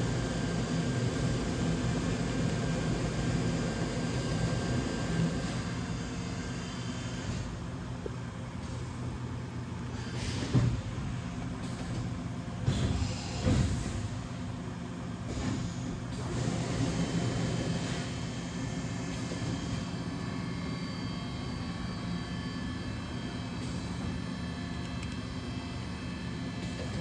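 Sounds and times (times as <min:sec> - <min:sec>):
milling machine humming and hissing: 0:00.0 - 0:27.0.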